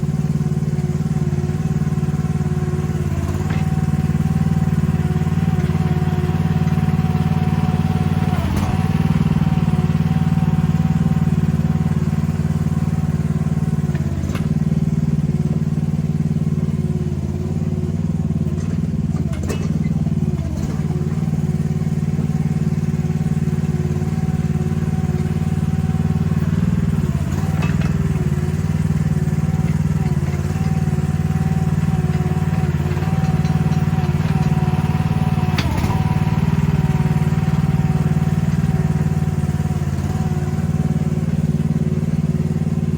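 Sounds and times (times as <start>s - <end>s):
excavator engine running: 0.0s - 42.9s.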